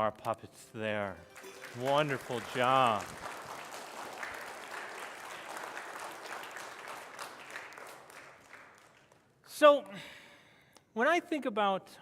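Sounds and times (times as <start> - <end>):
audience clapping: 1.2 - 9.4.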